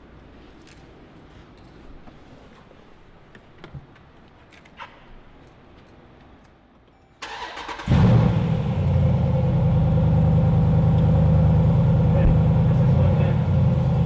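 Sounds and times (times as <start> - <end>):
engine starter cranking: 7.2 - 8.2
car engine firing up loudly: 7.2 - 14.0.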